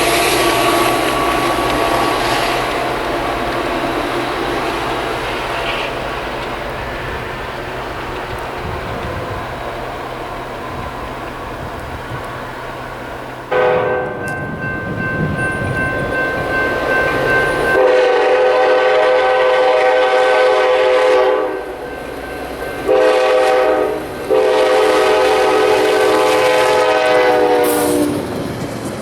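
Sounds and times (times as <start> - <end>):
passing train rail rumble: 0.0 - 29.0
locomotive horn blasts: 13.5 - 14.4, 17.7 - 21.9, 22.8 - 28.1.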